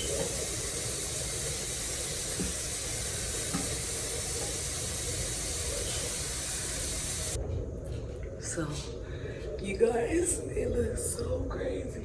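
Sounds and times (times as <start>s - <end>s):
tap running into sink: 2.3s - 2.8s, 3.4s - 4.7s.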